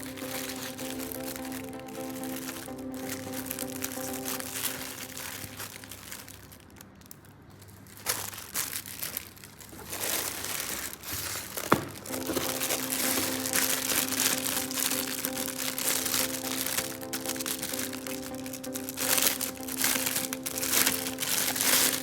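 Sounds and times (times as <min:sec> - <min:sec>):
background music: 0:00.0 - 0:06.6, 0:11.7 - 0:22.0
plastic packaging crinkling: 0:00.0 - 0:22.0.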